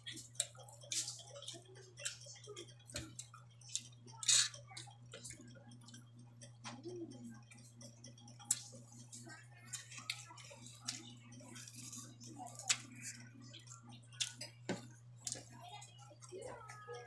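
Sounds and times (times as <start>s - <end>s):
person chewing food: 0.0s - 6.6s, 7.7s - 15.6s
steady low hum: 0.0s - 17.0s.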